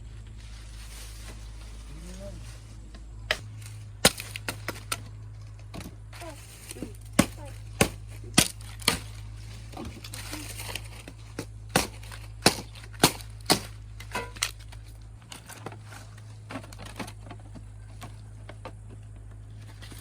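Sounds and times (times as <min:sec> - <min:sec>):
dry leaves rustling: 0:00.0 - 0:18.5
blade chopping sugarcane: 0:03.3 - 0:05.1, 0:05.7 - 0:17.0.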